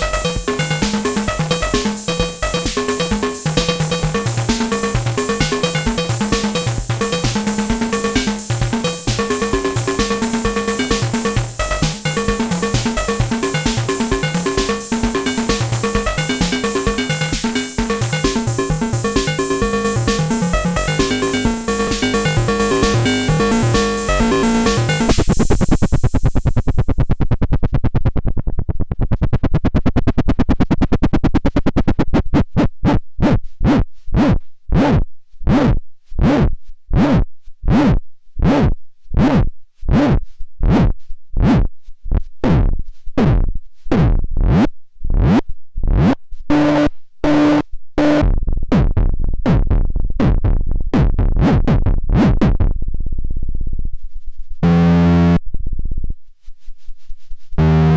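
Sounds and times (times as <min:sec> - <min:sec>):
analogue bass synthesizer sequence: 0:00.0 - 0:26.0.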